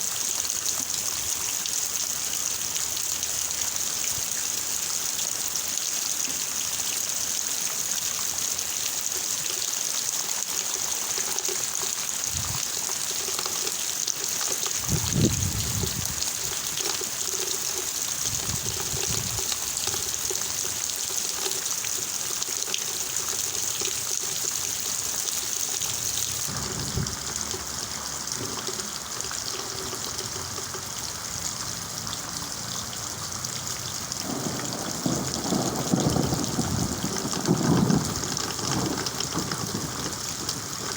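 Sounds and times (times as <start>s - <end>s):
heavy rain falling: 0.0s - 40.9s
low rumbles: 26.5s - 29.0s.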